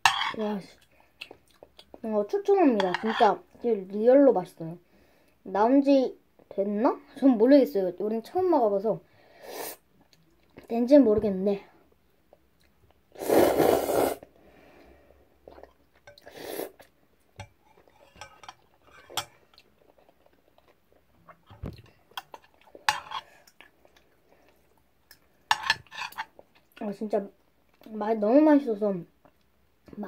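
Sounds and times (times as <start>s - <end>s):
slurping noodles: 13.2s - 14.2s.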